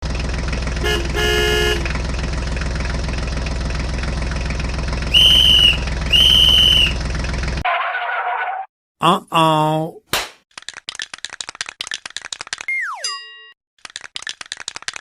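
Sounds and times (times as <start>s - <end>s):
cartoon vehicle engine running: 0.0s - 7.6s
horn toots: 0.8s - 2.0s, 5.1s - 7.0s.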